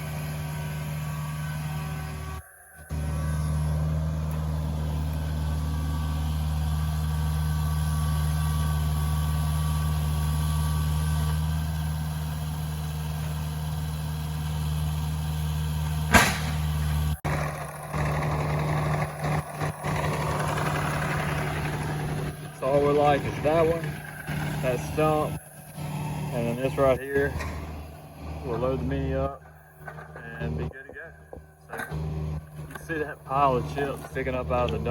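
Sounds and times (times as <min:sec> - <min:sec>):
engine idling: 0:00.0 - 0:34.9
sharp bang: 0:16.1 - 0:17.0.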